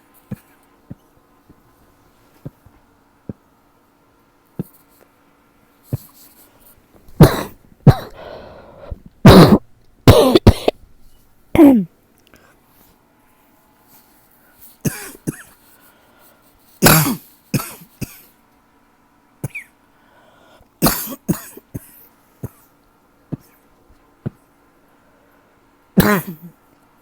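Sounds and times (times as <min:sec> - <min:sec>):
throat clearing: 0:07.2 - 0:08.4, 0:09.3 - 0:10.8, 0:11.6 - 0:11.9, 0:14.8 - 0:15.6, 0:16.8 - 0:18.3, 0:19.4 - 0:19.7, 0:26.0 - 0:26.6
person coughing: 0:07.2 - 0:08.6, 0:09.3 - 0:10.8, 0:11.6 - 0:11.9, 0:14.8 - 0:15.6, 0:16.8 - 0:18.3, 0:19.4 - 0:19.7, 0:20.8 - 0:22.7, 0:26.0 - 0:26.6.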